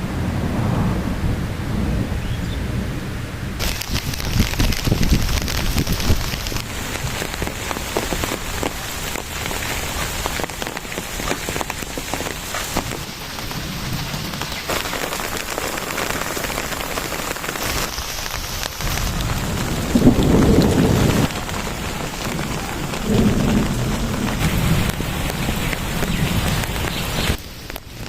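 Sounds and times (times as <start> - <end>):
low rumbles of thunder: 0.0 - 8.8, 18.8 - 27.4
steady rain falling: 0.0 - 28.0.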